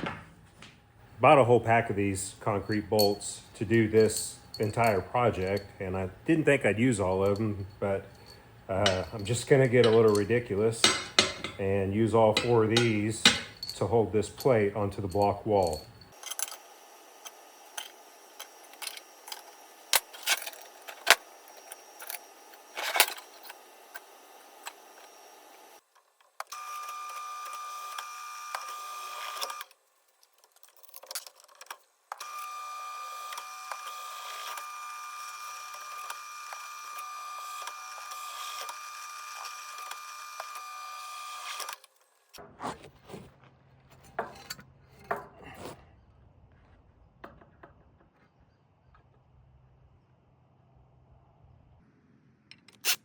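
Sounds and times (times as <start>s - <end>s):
power drill drilling into concrete: 32.2s - 41.8s.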